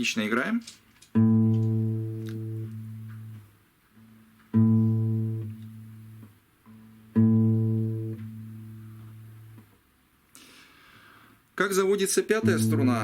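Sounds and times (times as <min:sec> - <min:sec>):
acoustic guitar string plucked: 0:01.1 - 0:09.8, 0:12.4 - 0:13.0
open guitar string ringing: 0:01.2 - 0:03.4, 0:12.4 - 0:13.0.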